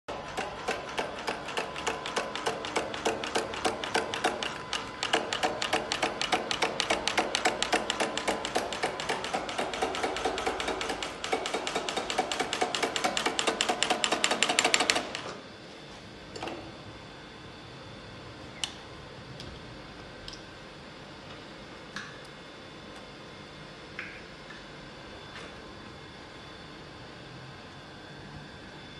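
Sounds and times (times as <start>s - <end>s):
stitching machine clicking: 0.1s - 15.4s.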